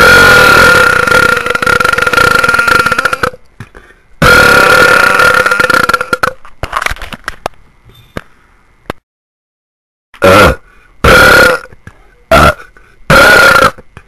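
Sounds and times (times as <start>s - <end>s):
person burping: 0.0s - 3.4s, 4.2s - 6.4s, 10.2s - 14.0s.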